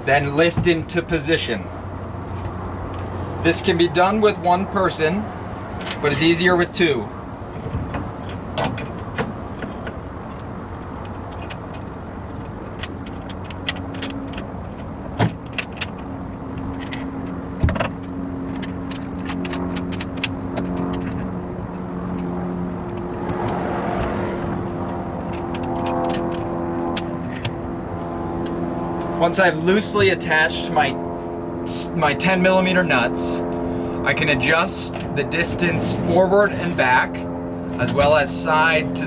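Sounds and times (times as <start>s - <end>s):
low rumble: 22.5s - 26.7s.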